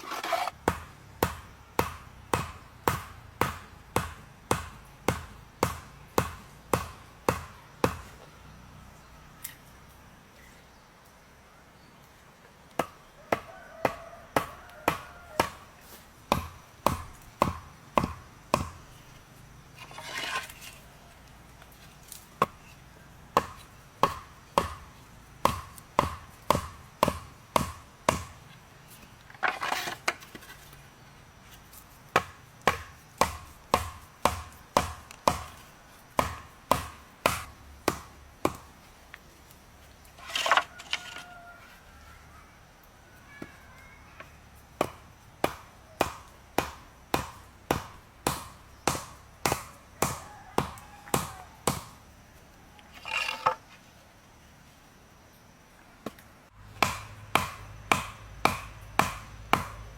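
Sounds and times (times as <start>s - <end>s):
axe chopping wood: 0.1s - 8.2s, 12.7s - 19.0s, 22.1s - 28.5s, 32.1s - 38.7s, 44.8s - 52.0s, 56.0s - 59.9s.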